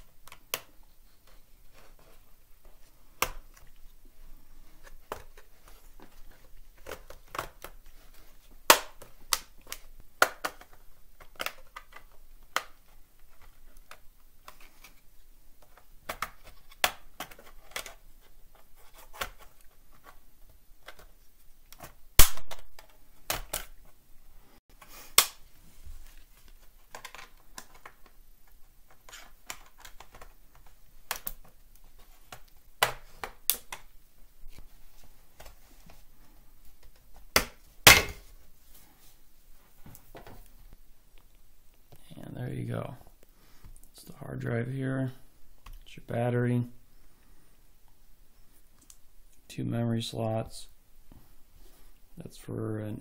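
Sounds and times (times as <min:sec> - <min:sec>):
plastic clips snapping loose: 0:28.9 - 0:31.5, 0:32.3 - 0:33.9.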